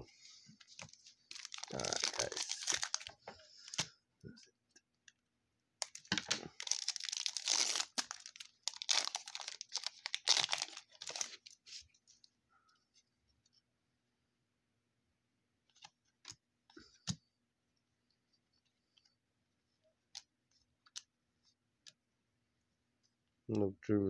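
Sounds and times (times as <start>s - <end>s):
wrapper tearing and crinkling: 1.3s - 3.1s, 5.8s - 11.6s.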